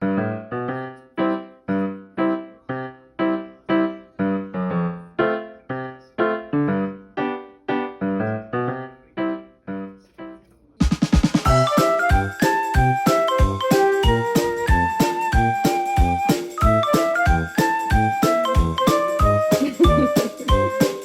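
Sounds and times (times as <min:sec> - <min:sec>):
keyboard playing short chords: 0:11.5 - 0:21.0
tinkling high keyboard notes: 0:11.5 - 0:21.0.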